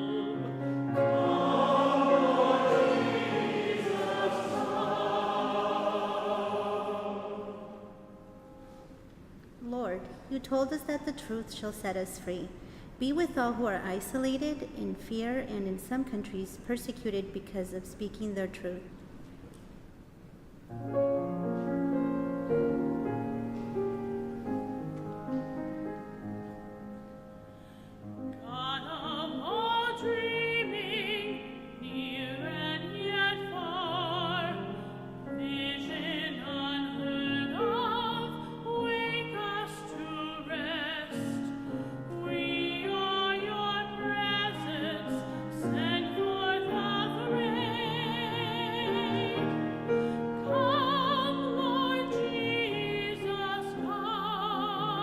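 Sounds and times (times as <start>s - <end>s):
person singing with vibrato: 0.0s - 8.2s, 28.4s - 55.0s.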